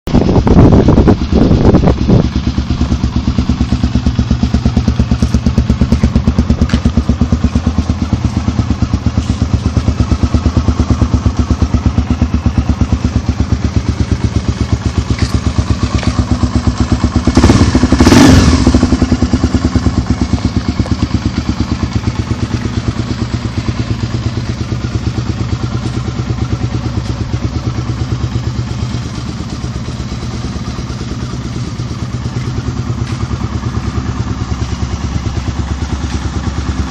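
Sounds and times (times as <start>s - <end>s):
motorcycle engine idling: 0.1s - 36.9s.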